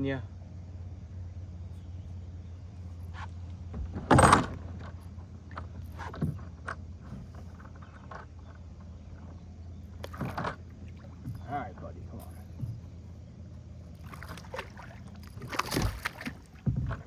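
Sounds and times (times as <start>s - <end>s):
steady low hum: 0.0s - 17.0s
fish splashing in water: 13.9s - 17.0s.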